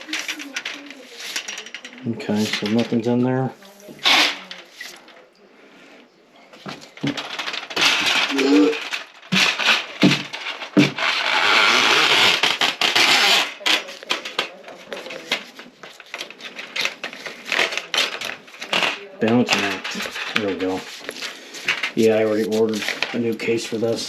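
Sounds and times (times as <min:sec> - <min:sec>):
metal auger cable clattering: 0:00.0 - 0:03.0.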